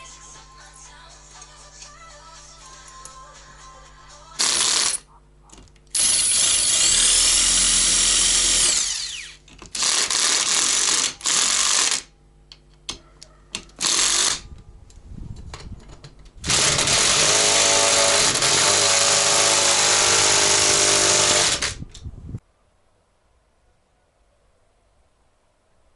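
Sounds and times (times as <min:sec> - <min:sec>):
power drill whining: 0:05.9 - 0:12.1, 0:13.8 - 0:14.4, 0:16.4 - 0:21.8.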